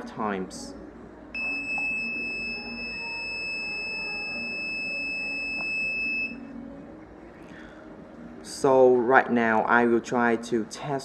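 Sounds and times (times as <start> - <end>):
high-pitched electronic buzzer tone: 1.4 - 6.5.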